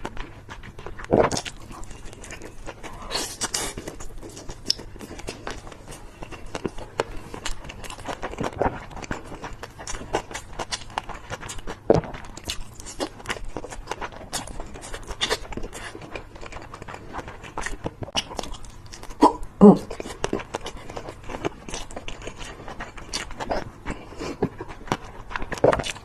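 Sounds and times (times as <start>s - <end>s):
wet chewing and biting: 0.0s - 26.0s.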